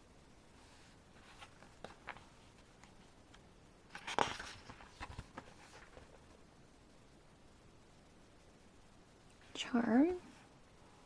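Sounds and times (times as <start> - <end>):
paper page rustling: 0.7 - 3.1, 3.9 - 6.4.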